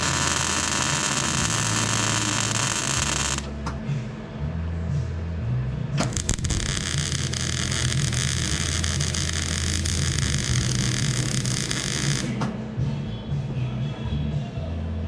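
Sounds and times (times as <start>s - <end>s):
metalworking power tool hissing: 0.0s - 3.6s
background music: 0.0s - 15.0s.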